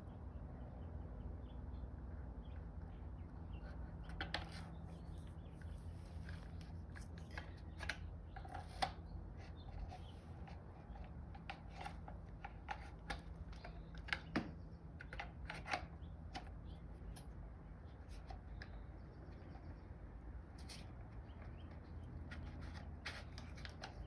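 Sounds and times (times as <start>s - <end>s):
plastic clicks and rubbing: 21.4s - 24.0s.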